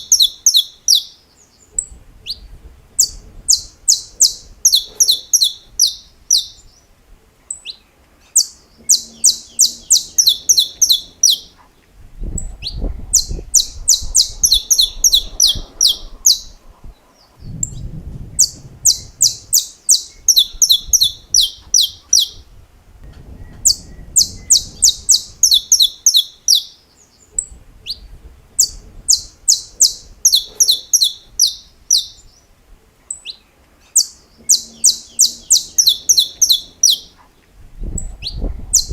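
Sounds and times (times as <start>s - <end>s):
finch singing sharp clicking notes: 3.0s - 6.7s, 28.6s - 32.2s, 33.1s - 37.2s.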